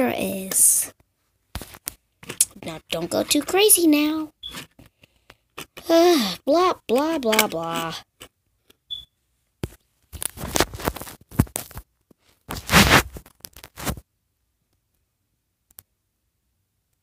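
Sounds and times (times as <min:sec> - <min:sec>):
scraping and rustling: 0:10.2 - 0:14.0.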